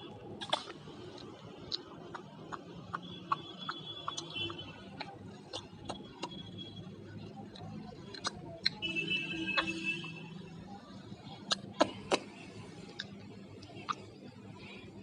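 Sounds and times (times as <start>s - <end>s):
parrot beak clicking and tapping: 0.4s - 6.5s, 7.5s - 8.8s.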